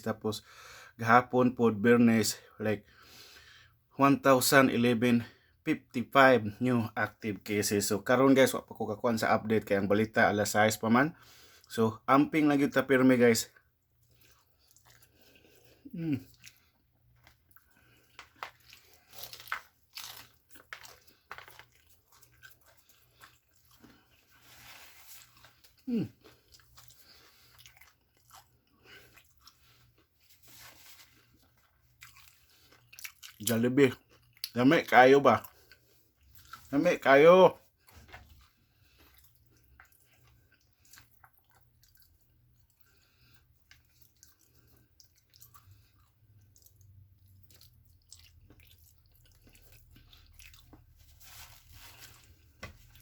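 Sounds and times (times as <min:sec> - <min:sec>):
chewing crispy fried chicken: 0:11.1 - 0:53.0.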